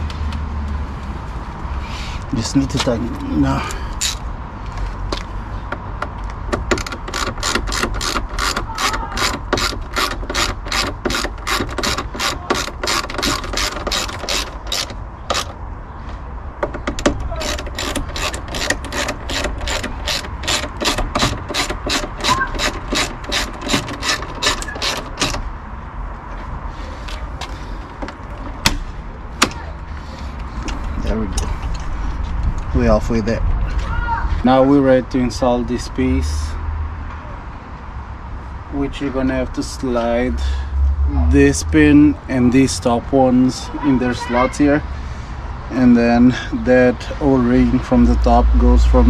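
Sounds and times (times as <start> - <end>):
hand ratchet clicking: 6.6 - 15.6, 16.6 - 25.4.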